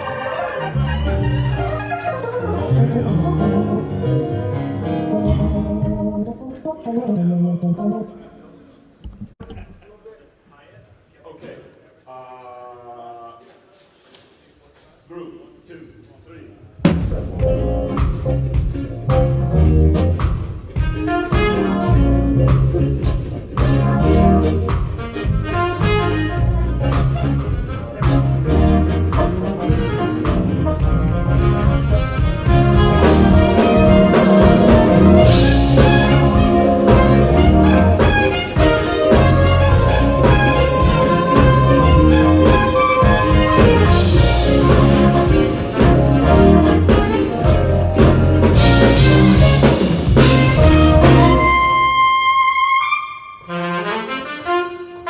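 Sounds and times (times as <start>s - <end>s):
bass line: 0.0s - 6.3s, 16.9s - 20.4s, 21.4s - 52.4s
guitar: 0.0s - 7.2s, 16.9s - 53.0s
keyboard chords: 0.0s - 8.7s, 16.9s - 55.0s
drum kit hits: 16.9s - 52.0s
horn line: 19.2s - 55.0s.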